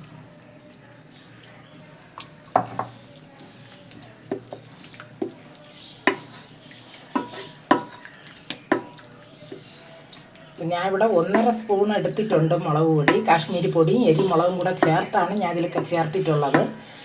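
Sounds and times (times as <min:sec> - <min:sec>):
faint sizzle: 0:00.0 - 0:17.0
spoon knocking against pot: 0:02.6 - 0:02.9, 0:06.1 - 0:06.4, 0:07.2 - 0:09.6, 0:11.2 - 0:11.7, 0:12.3 - 0:13.5, 0:14.1 - 0:16.8.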